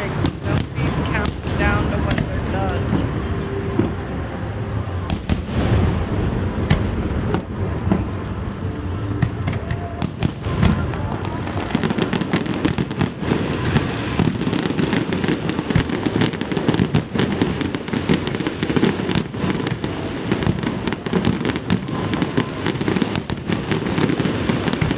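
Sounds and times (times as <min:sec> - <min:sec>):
fireworks popping and crackling: 0:00.0 - 0:24.9.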